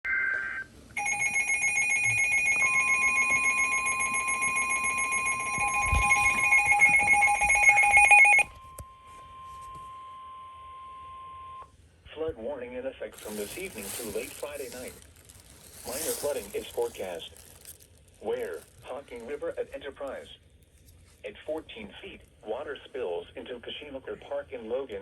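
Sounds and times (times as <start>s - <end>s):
steady warning tone: 1.0s - 8.4s
pulsing electronic alarm: 1.0s - 8.5s.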